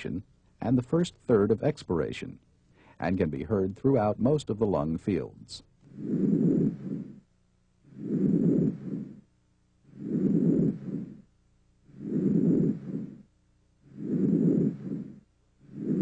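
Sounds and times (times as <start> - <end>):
breathing through stethoscope: 2.7 - 3.0.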